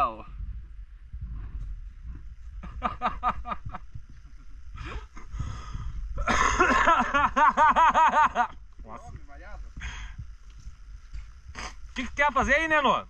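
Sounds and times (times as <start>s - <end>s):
low rumble: 0.0s - 12.7s
people laughing: 2.6s - 5.3s, 6.2s - 8.6s.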